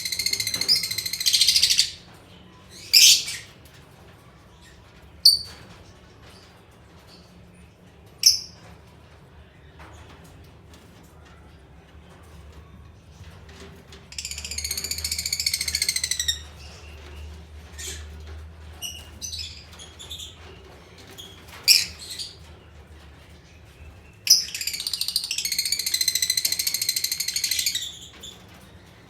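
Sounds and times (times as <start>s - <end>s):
lovebirds chattering trills: 0.0s - 2.0s, 2.7s - 3.5s, 14.2s - 17.1s, 18.8s - 22.6s, 23.9s - 29.0s.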